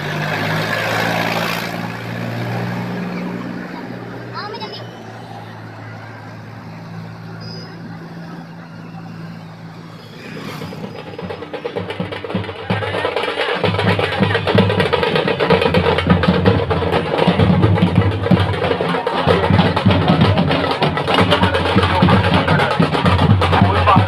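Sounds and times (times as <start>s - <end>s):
dhol drums beating: 9.0s - 24.0s.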